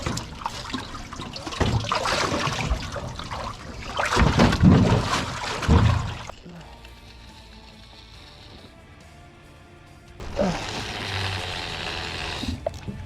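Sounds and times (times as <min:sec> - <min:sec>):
water sloshing: 0:00.0 - 0:06.4, 0:12.4 - 0:13.0
water splashing and trickling: 0:00.0 - 0:06.5, 0:12.4 - 0:13.0.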